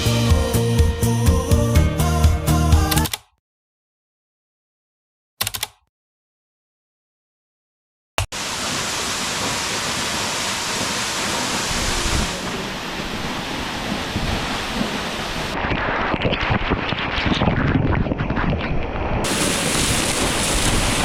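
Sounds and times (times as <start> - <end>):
rushing falling water: 8.4 - 15.6, 19.3 - 21.0.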